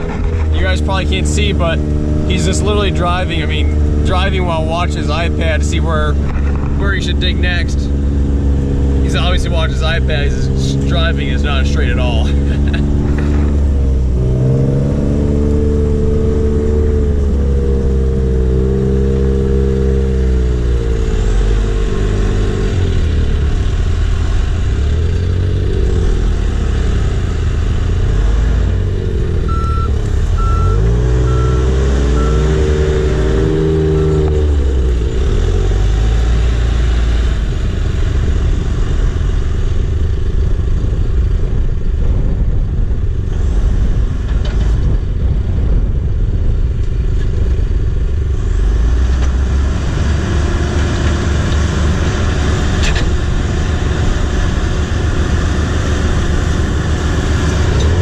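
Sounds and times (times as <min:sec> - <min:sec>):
heavy diesel engine under load: 0:00.0 - 0:58.0
reversing alarm beeps: 0:29.5 - 0:32.6.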